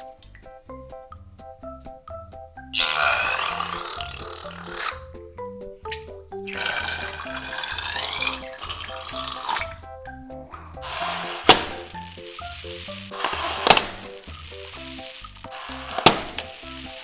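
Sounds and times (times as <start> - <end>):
music with plucked notes: 0.0 - 17.0
loud hissing water-like noise: 2.8 - 4.8, 6.5 - 9.8.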